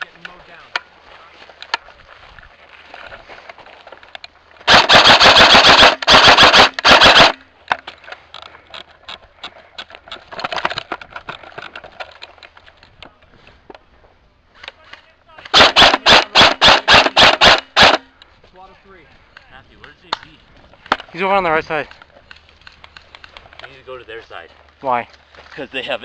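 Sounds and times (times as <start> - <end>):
airsoft gun full-auto bursts: 4.7 - 7.4, 15.5 - 18.1.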